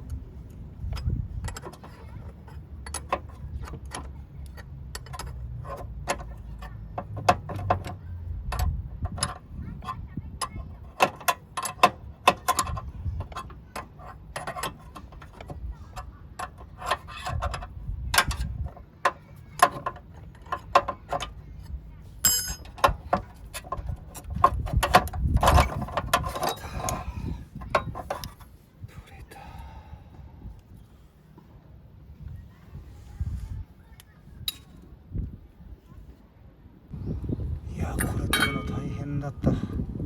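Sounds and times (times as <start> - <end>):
hand tools clicking and knocking: 0.9 - 28.4
ringing metal clink: 22.2 - 22.8, 38.3 - 38.9.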